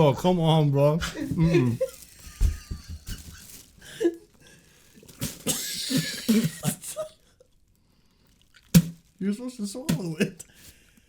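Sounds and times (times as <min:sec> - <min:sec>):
person coughing and sputtering: 0:05.3 - 0:07.1.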